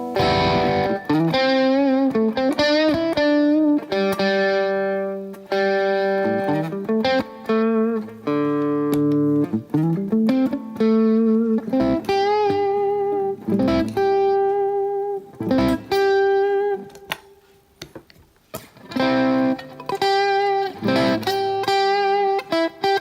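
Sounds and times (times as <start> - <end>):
distorted electric guitar chords: 0.0 - 2.2, 15.4 - 16.8.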